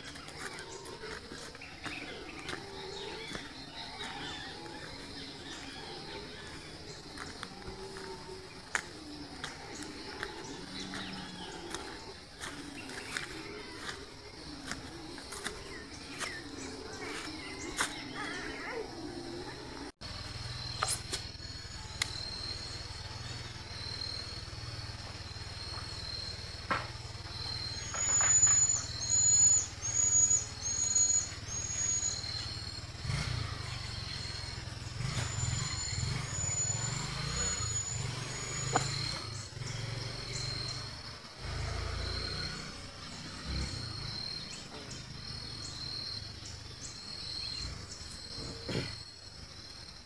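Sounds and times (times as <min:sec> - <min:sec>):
loud high hooked bird calls: 0:27.2 - 0:41.7.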